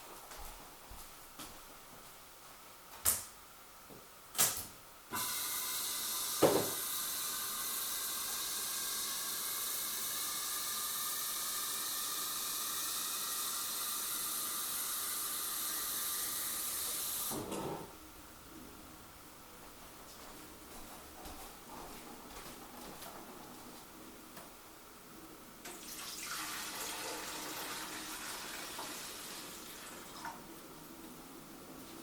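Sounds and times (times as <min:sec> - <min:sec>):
steady hiss: 0:04.4 - 0:20.9
knock: 0:06.4 - 0:06.8.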